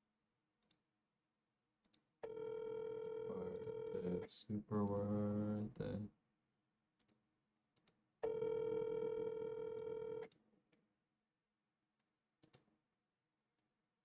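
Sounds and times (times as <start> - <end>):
telephone ringback tone: 2.2 - 4.0, 8.2 - 10.2.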